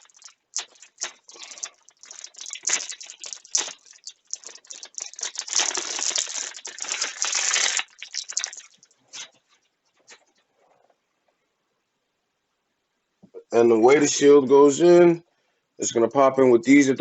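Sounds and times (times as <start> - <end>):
packaging crinkling and rustling: 4.4 - 9.3.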